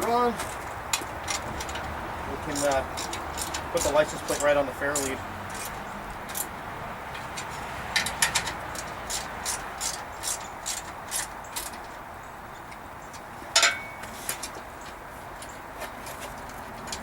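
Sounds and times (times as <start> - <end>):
ratchet wrench clicking: 2.5 - 6.5, 7.4 - 11.7.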